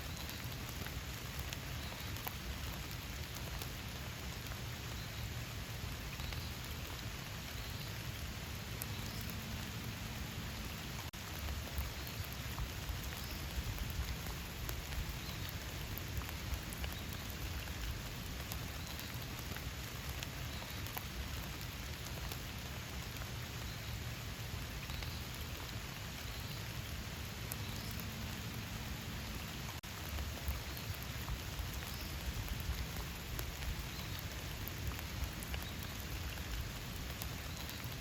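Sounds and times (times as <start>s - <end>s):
rain falling in forest: 0.0s - 38.0s.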